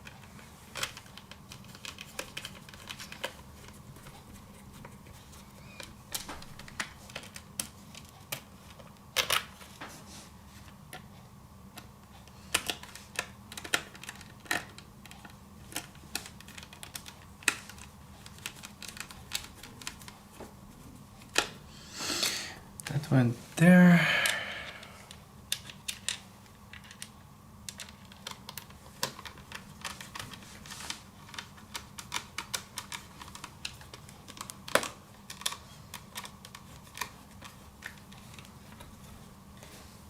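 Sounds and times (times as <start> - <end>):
faint steady hum: 0.0 - 40.0
laptop parts clicking: 0.7 - 3.4, 12.5 - 20.2, 27.7 - 30.4, 31.2 - 38.9.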